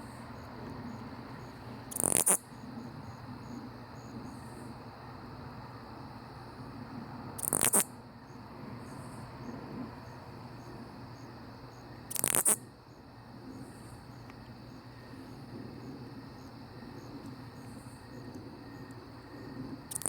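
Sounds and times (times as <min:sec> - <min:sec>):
faint insect chorus: 0:00.0 - 0:20.0
katydid buzzing call: 0:01.9 - 0:02.5, 0:07.4 - 0:07.9, 0:12.1 - 0:12.6.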